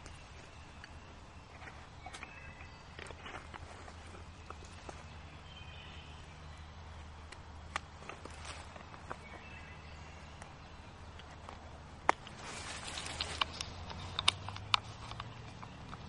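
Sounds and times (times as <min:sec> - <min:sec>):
rustling in dry leaves: 0:00.0 - 0:07.1, 0:08.0 - 0:16.0
twig snapping: 0:07.2 - 0:09.4, 0:10.4 - 0:16.0.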